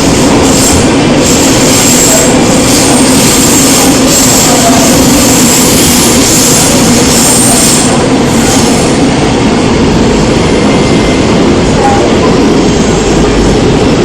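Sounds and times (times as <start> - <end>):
electric train rumbling: 0.0 - 14.0.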